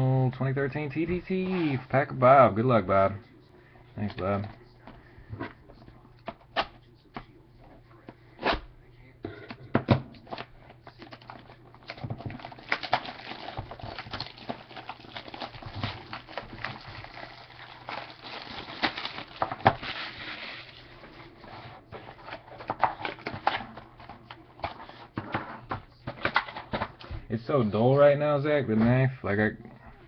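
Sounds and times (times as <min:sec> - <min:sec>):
plastic wrap crinkling: 0:10.3 - 0:21.1.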